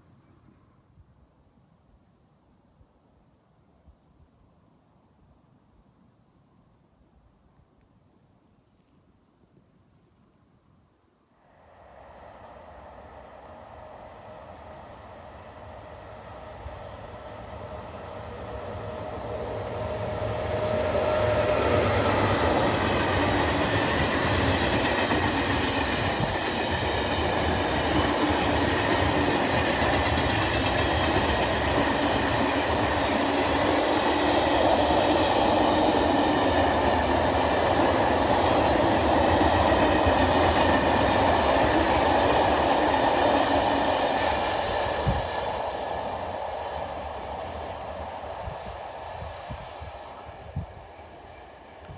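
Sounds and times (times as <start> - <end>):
train rumbling and clattering: 12.2 - 51.9.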